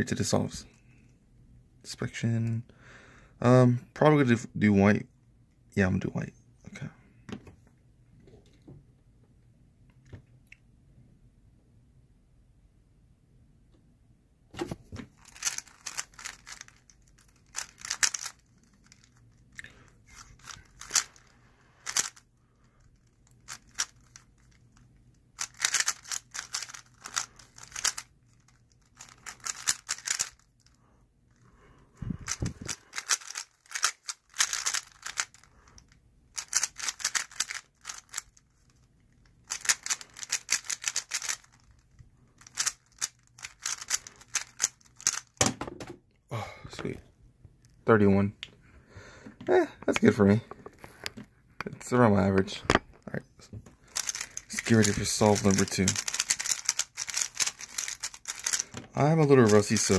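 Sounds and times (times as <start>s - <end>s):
plastic clicking of puzzle cube turning: 15.2s - 19.2s, 20.2s - 22.2s, 22.9s - 24.6s, 25.4s - 30.8s, 32.2s - 45.4s, 53.9s - 58.9s.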